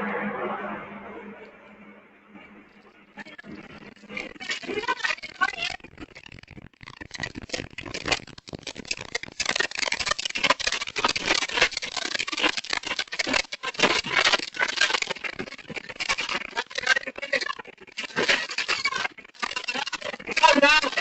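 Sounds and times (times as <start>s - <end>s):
voices: 20.4s - 21.0s.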